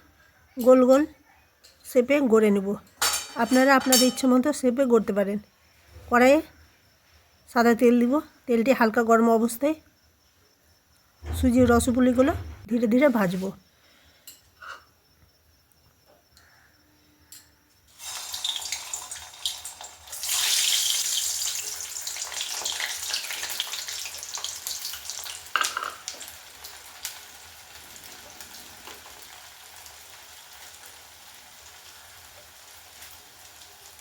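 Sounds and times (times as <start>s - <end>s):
dumplings sizzling in oil: 17.9s - 34.0s.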